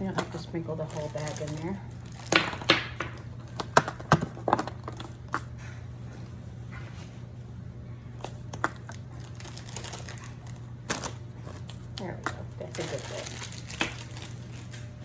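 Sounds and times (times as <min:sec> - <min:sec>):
chocolate eggs clicking into basket: 0:00.0 - 0:05.5
steady low hum: 0:00.0 - 0:15.0.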